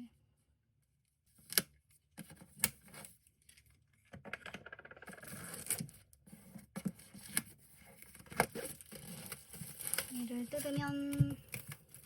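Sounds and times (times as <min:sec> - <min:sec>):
packaging tearing: 0:08.3 - 0:10.6.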